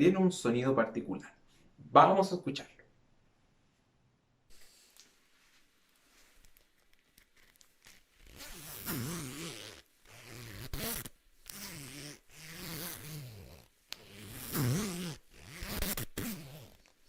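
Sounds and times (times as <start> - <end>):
hoodie zipper being zipped: 7.2 - 17.0.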